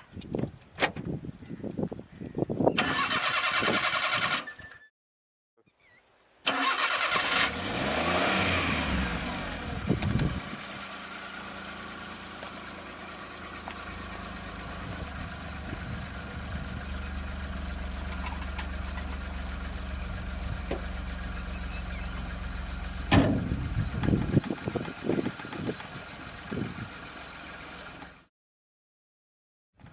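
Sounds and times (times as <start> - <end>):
car engine idling: 8.7 - 28.1.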